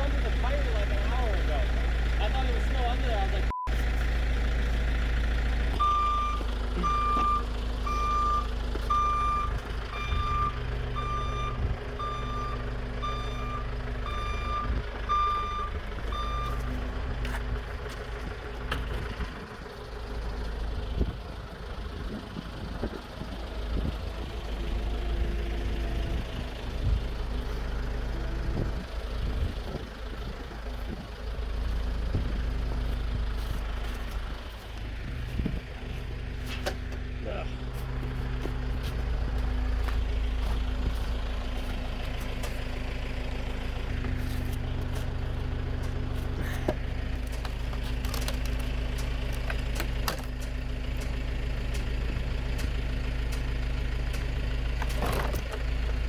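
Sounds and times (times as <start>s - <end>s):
engine idling: 0.0s - 56.0s
reversing alarm beeping: 5.8s - 16.8s.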